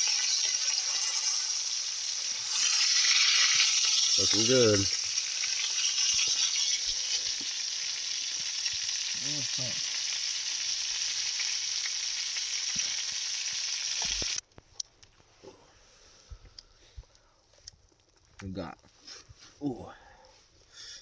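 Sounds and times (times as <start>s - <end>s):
meat sizzling in a pan: 0.0s - 14.4s.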